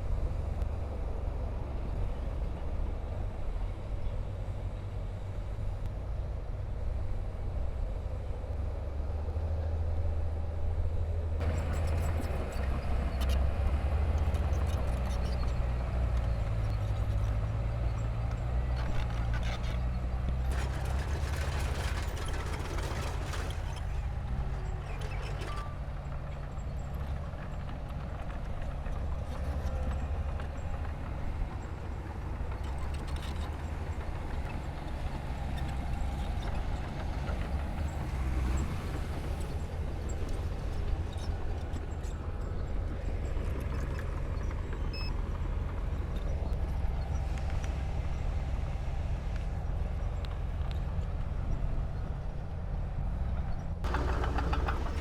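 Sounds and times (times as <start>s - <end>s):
diesel machinery engine rumble: 0.0s - 55.0s
clattering knocks and clanks: 53.8s - 55.0s.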